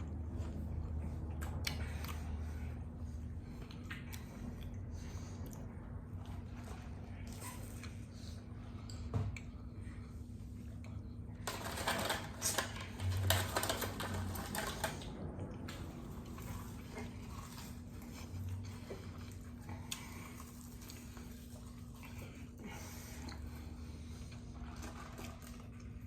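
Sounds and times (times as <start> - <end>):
paper wrappers crinkling: 11.4 - 15.1
chewing: 15.8 - 26.0.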